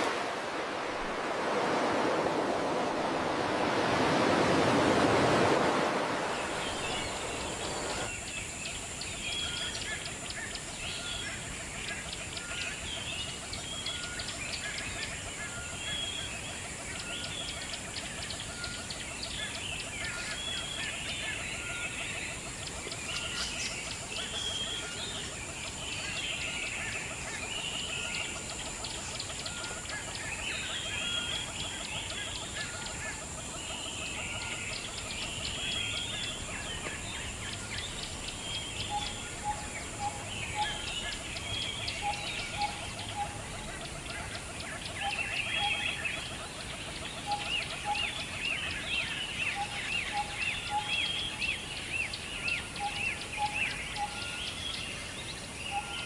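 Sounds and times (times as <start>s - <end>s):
many birds chirping: 0.0s - 56.0s.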